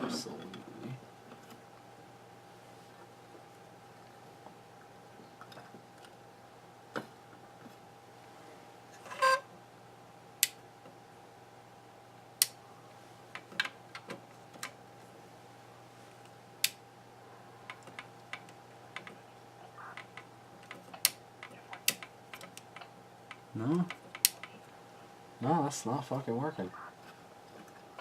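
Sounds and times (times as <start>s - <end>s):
faint steady hum: 0.0s - 28.0s.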